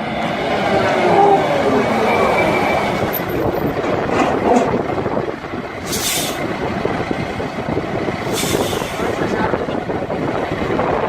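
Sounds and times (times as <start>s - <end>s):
heavy truck engine rumble: 0.0s - 11.0s
air brake hiss: 5.9s - 6.4s, 8.3s - 9.1s.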